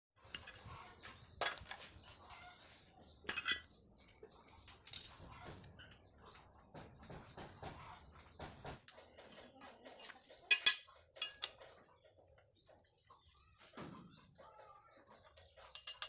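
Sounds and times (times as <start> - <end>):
metal parts clinking: 3.3 - 5.2.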